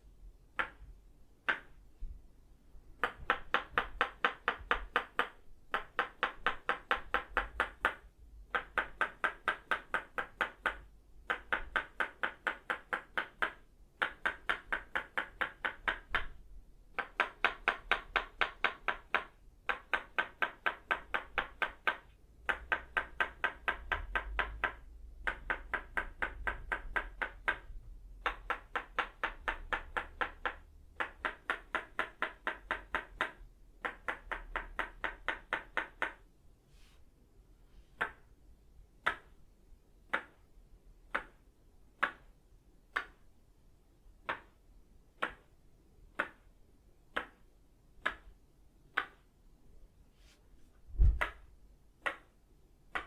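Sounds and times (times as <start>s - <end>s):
wooden mallet tapping wooden peg: 0.6s - 0.9s, 1.5s - 1.8s, 3.0s - 36.2s, 38.0s - 38.3s, 39.0s - 39.4s, 40.1s - 40.4s, 41.1s - 41.4s, 42.0s - 42.3s, 44.2s - 44.6s, 45.2s - 45.5s, 46.1s - 46.5s, 47.1s - 47.4s, 48.0s - 49.2s, 51.0s - 52.3s.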